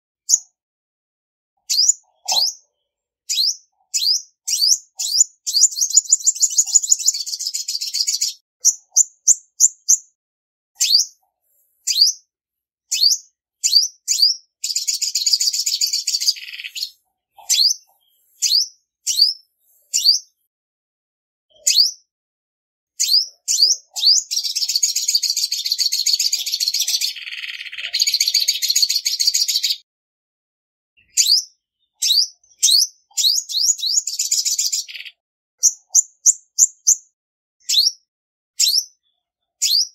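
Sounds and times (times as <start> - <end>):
bird trills: 1.6 - 10.0, 10.8 - 11.2, 11.8 - 12.2, 12.9 - 20.3, 21.5 - 22.0, 23.0 - 29.8, 31.0 - 37.0.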